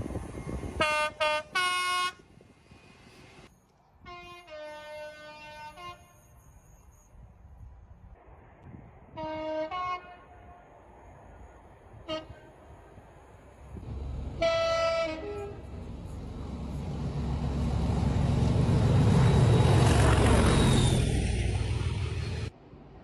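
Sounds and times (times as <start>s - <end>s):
train passing rumble: 0.0s - 4.0s, 5.0s - 23.0s
train horn: 0.8s - 2.2s, 4.1s - 6.2s, 9.2s - 10.7s, 12.0s - 12.5s, 14.4s - 15.7s.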